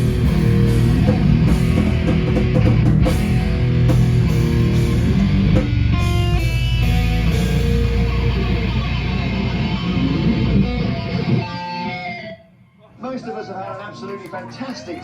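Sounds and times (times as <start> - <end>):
drum strikes: 0.0 - 8.2
heavy rock band playing: 0.0 - 12.4
low guitar chord ringing: 3.0 - 12.4.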